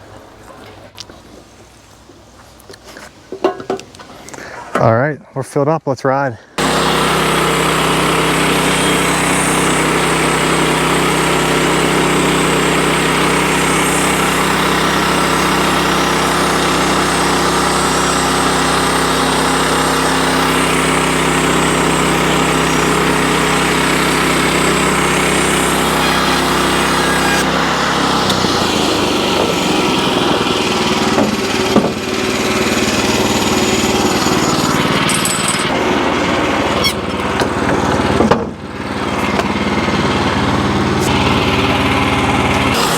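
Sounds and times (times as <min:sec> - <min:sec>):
sawmill engine running: 0:06.6 - 0:42.9
sharp knocks: 0:31.1 - 0:32.1.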